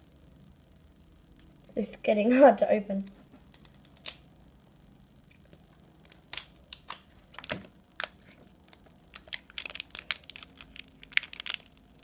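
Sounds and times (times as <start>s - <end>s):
plastic wrapping crackling: 5.5s - 12.0s.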